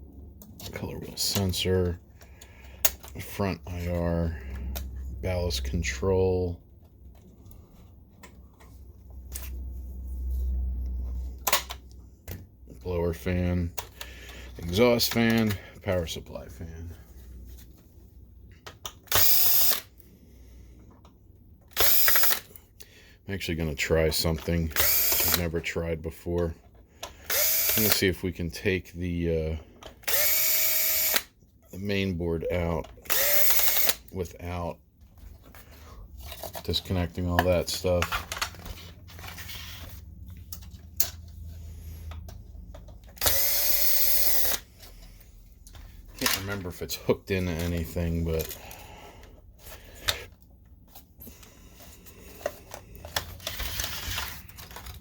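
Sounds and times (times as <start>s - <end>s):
cordless power driver running: 19.1s - 19.9s, 21.7s - 22.4s, 24.7s - 25.4s, 27.2s - 28.0s, 30.0s - 31.3s, 33.0s - 34.0s, 43.1s - 44.8s
electric screwdriver whirring: 19.1s - 19.9s, 21.8s - 22.4s, 24.8s - 25.4s, 27.3s - 28.0s, 30.0s - 31.3s, 33.1s - 34.0s, 43.1s - 44.7s.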